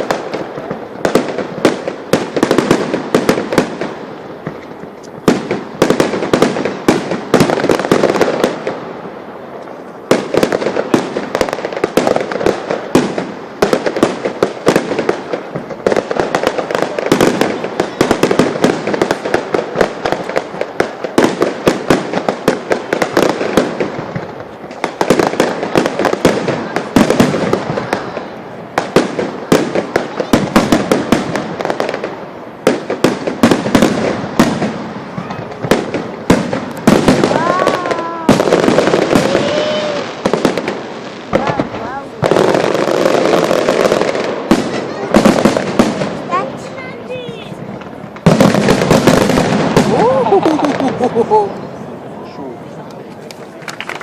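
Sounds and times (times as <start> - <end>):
fireworks bursts and crackling: 0.0 - 54.0.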